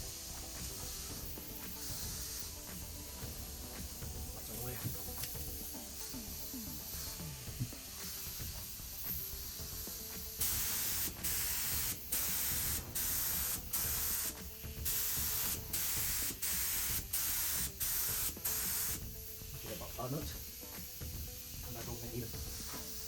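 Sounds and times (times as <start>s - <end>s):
paint spray gun hissing bursts: 0.0s - 23.0s.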